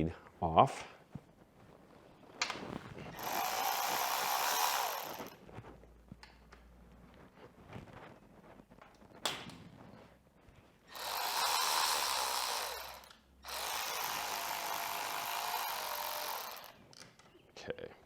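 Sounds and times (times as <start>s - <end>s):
power driver whirring: 3.1s - 5.4s, 10.9s - 17.0s.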